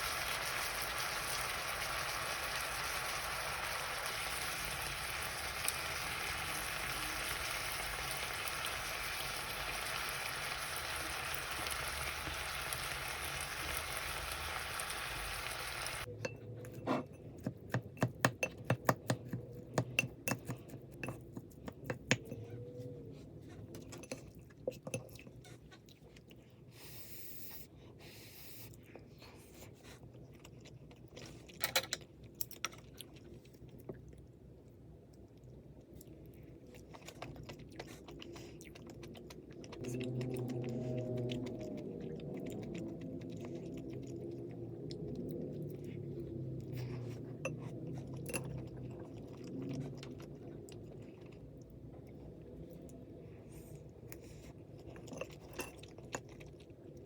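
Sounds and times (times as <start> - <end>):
food sizzling in a frying pan: 0.0 - 16.1.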